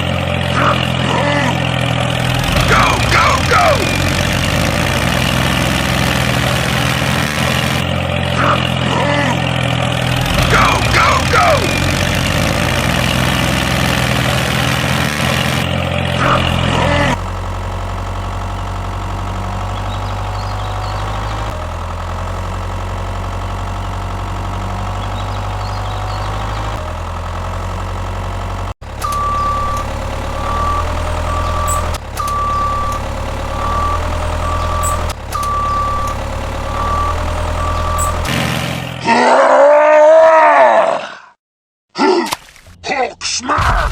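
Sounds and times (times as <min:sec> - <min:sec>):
heavy machine engine idling: 0:00.0 - 0:39.0
reversing alarm beeping: 0:02.2 - 0:07.8, 0:10.2 - 0:15.6, 0:28.9 - 0:38.3.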